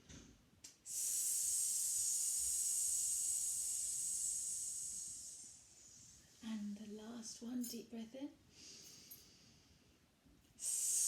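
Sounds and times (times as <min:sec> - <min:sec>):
person hissing on out-breath: 0:00.9 - 0:06.3, 0:10.6 - 0:11.0.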